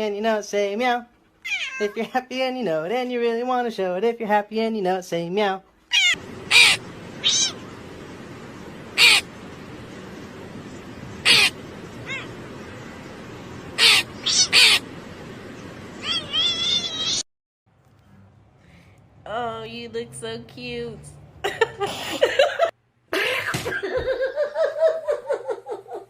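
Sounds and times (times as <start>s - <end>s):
cat meowing: 1.4s - 2.0s, 5.9s - 7.6s, 11.2s - 12.4s, 13.8s - 14.8s, 16.0s - 17.2s.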